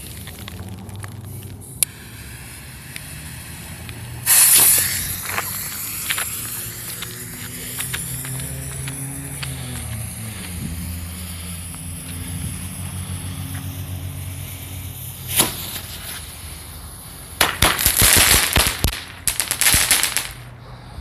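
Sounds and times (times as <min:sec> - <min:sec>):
firework bangs and crackles: 0:00.0 - 0:20.6
sharp pop: 0:15.3 - 0:16.2, 0:17.4 - 0:20.4.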